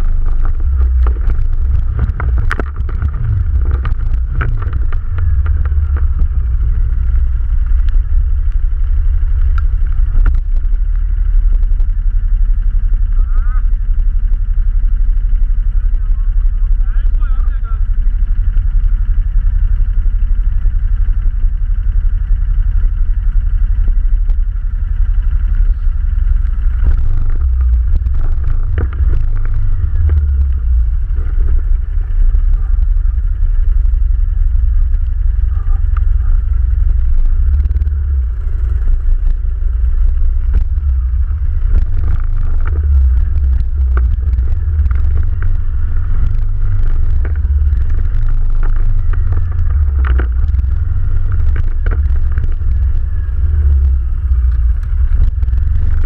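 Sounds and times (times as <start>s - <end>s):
knocks and rattles: 0.0s - 7.1s
engine drone: 0.0s - 56.0s.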